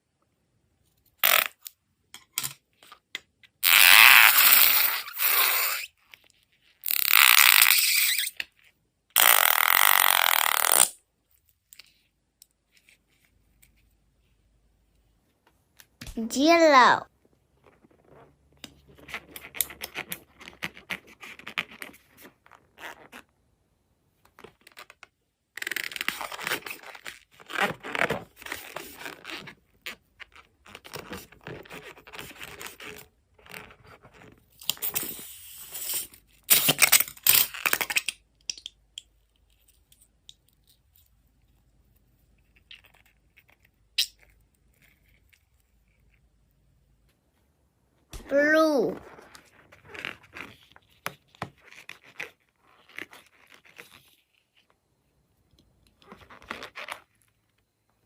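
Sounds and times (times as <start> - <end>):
rubber and slime scraping and tearing: 3.6 - 8.6, 25.6 - 38.1, 48.2 - 54.7.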